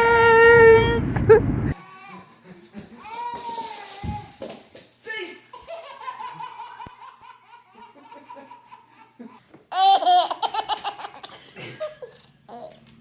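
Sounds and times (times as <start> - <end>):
baby laughing: 5.6 - 12.8.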